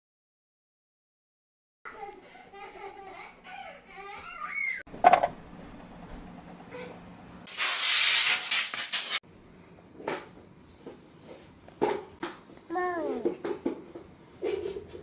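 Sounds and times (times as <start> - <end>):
hissing spray burst: 7.5 - 9.2.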